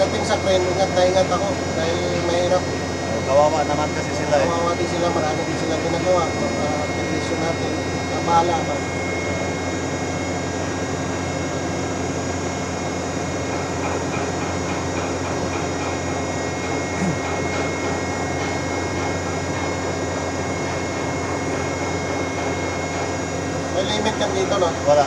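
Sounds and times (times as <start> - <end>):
high whine: 0.0 - 14.1
hydraulic crane drone: 0.0 - 25.0.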